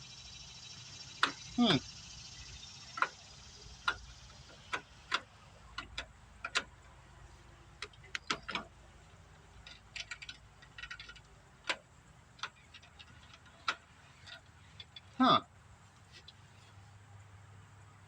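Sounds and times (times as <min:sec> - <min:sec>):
light metallic rattles: 0:00.0 - 0:16.9
sharp clicks: 0:01.2 - 0:01.6, 0:02.4 - 0:06.8, 0:07.8 - 0:08.7.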